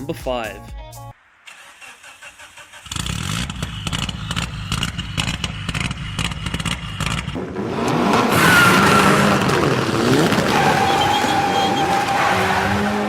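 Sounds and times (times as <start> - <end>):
rally car engine revving: 2.8 - 13.0
sharp pops and clatter: 3.4 - 7.4.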